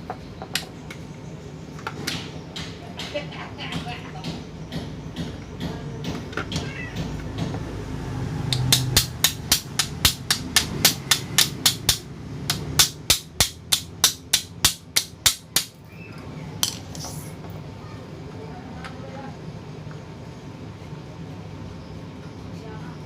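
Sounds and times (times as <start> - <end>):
fast hammer taps on metal shaft: 8.5 - 15.7.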